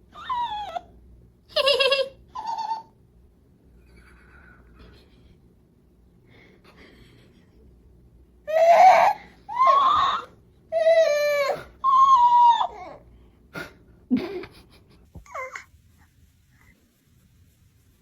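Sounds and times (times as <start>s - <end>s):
baby crying: 8.5s - 13.0s
baby whimpering: 8.5s - 13.1s, 15.2s - 15.7s.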